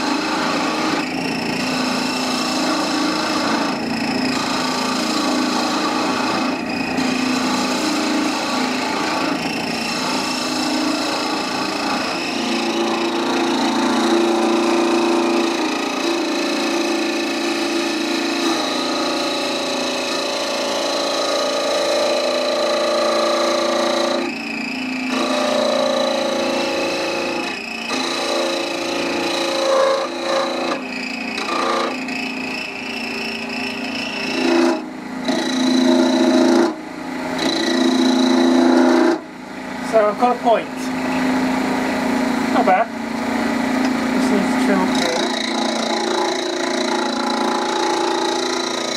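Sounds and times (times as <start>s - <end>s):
chisel scraping spinning wood: 0.0s - 17.6s, 20.5s - 36.8s, 44.2s - 48.9s
wood lathe motor hum: 0.0s - 48.9s.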